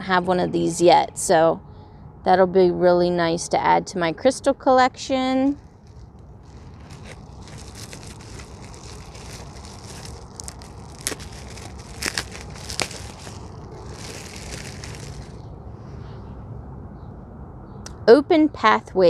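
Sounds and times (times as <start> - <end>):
packaging crinkling: 5.5 - 15.4.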